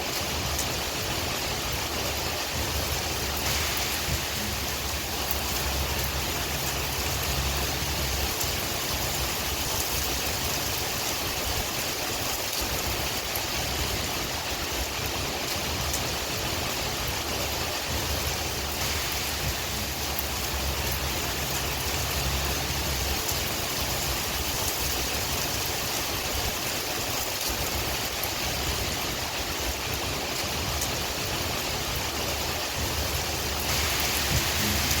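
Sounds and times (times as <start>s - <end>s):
steady rain hiss: 0.0s - 35.0s
wind: 0.0s - 35.0s
low rumble: 2.6s - 9.8s, 32.8s - 35.0s.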